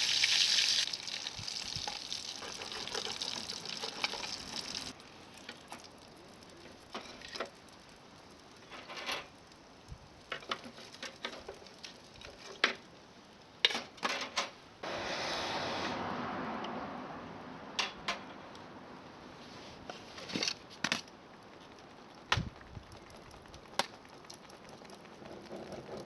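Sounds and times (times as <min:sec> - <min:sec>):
fish sizzling in oil: 0:00.0 - 0:05.0.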